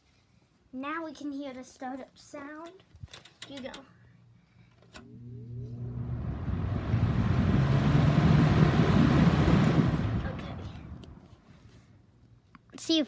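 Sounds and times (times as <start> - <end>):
fan motor humming: 4.7 - 11.8
rush of air: 5.1 - 11.9.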